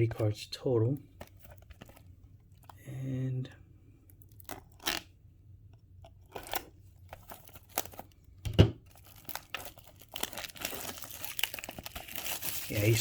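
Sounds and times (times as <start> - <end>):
packaging crinkling and tearing: 1.2 - 2.8, 4.1 - 5.1, 6.0 - 8.2, 8.8 - 13.0.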